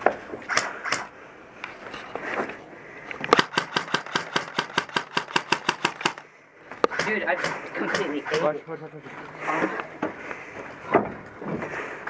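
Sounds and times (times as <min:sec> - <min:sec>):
scattered clicks: 0:03.1 - 0:06.2, 0:06.8 - 0:08.5
airsoft rifle firing full auto: 0:03.3 - 0:06.3.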